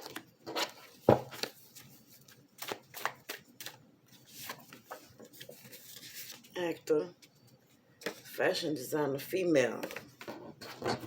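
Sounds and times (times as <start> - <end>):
cards being shuffled: 0.0 - 6.5.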